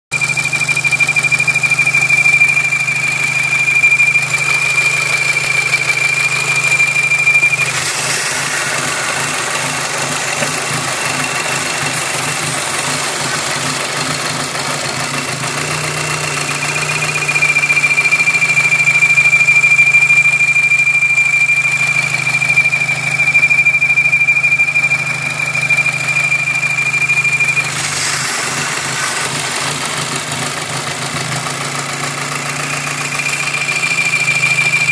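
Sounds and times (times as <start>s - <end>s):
car engine idling: 0.1s - 34.9s
high-pitched whistle: 0.1s - 34.9s.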